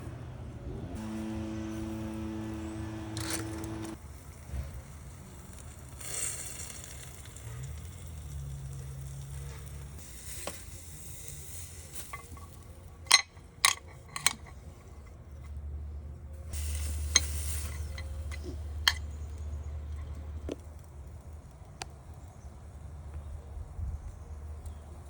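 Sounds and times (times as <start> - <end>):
steady low hum: 0.0 - 5.5
food sizzling on a grill: 3.7 - 12.7, 16.5 - 18.8.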